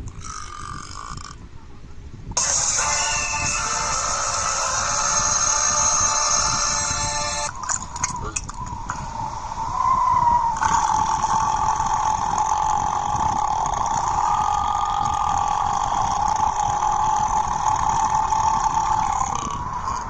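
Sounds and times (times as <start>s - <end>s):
long burp: 0.1s - 1.4s.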